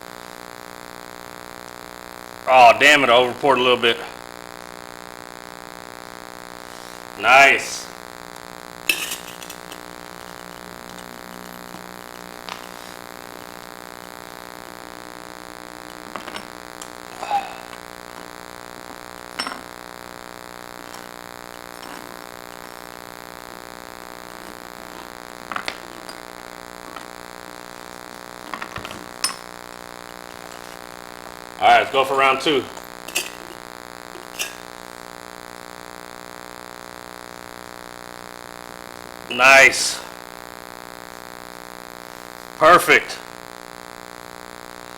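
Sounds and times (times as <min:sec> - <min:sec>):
electronic hum: 0:00.0 - 0:44.9
short clinks and knocks: 0:19.3 - 0:19.8, 0:28.4 - 0:29.6, 0:32.7 - 0:34.8.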